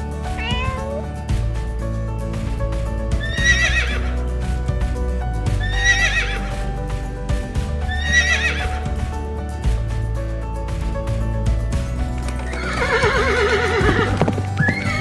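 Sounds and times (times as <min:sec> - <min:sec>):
background music with low notes: 0:00.0 - 0:15.0
horse whinnying: 0:12.5 - 0:15.0.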